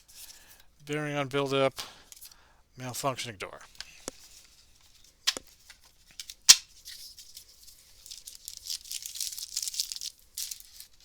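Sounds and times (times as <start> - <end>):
foil wrapper crinkling: 4.4 - 11.0
card snaps: 5.3 - 5.5, 6.5 - 6.7.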